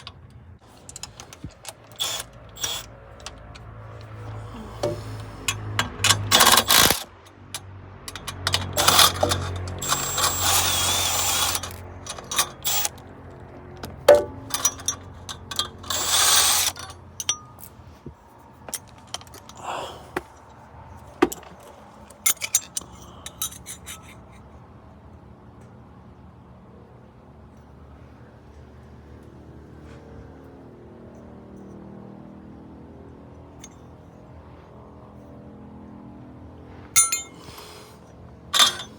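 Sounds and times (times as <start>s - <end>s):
metal tools clinking: 0.0s - 13.1s, 13.7s - 18.1s, 18.7s - 20.4s, 21.2s - 24.4s, 37.0s - 37.8s, 38.6s - 38.9s
power tool bursts: 1.0s - 2.9s, 5.9s - 7.1s, 8.4s - 13.0s, 15.5s - 17.0s.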